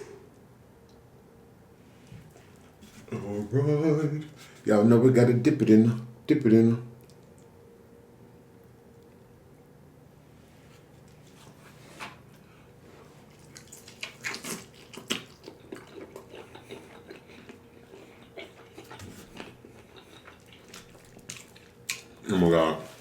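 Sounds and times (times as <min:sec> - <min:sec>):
fried chicken crunching: 0:13.2 - 0:22.2
wet chewing: 0:13.2 - 0:22.3.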